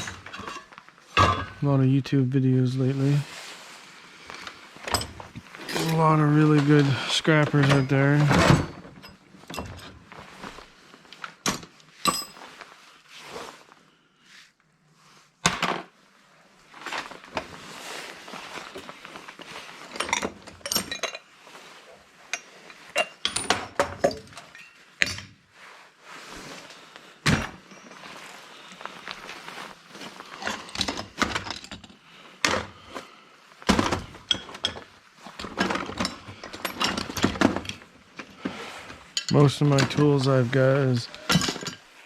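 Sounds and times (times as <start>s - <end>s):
metal tools clinking and rattling: 0.0s - 1.6s, 4.4s - 10.0s, 11.4s - 12.5s, 19.8s - 21.3s, 22.3s - 25.4s, 27.5s - 28.2s, 30.4s - 32.0s, 34.2s - 37.8s, 39.1s - 40.4s, 41.0s - 41.9s.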